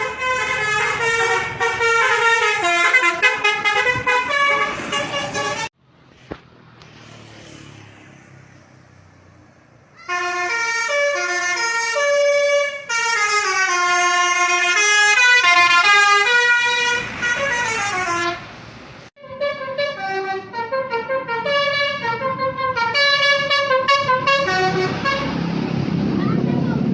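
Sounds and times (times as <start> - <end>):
multi-tone bus horn tune: 0.0 - 5.8, 10.1 - 18.5, 19.2 - 25.4.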